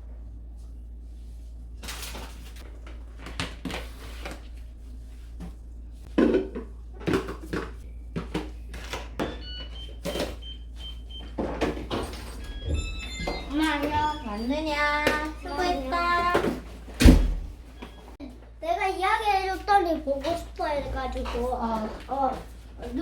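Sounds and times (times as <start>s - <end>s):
dishes knocking and clattering: 6.1s - 8.6s
doors and drawers opening and closing: 9.1s - 18.1s.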